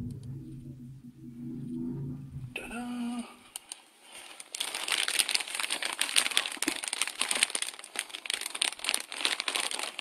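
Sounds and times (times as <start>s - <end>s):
packaging crinkling and rustling: 3.5s - 10.0s.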